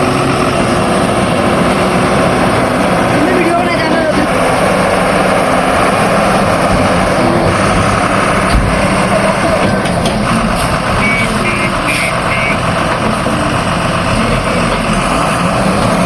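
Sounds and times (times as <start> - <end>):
heavy machinery diesel engine running: 0.0 - 16.0
dull thump: 8.4 - 8.9.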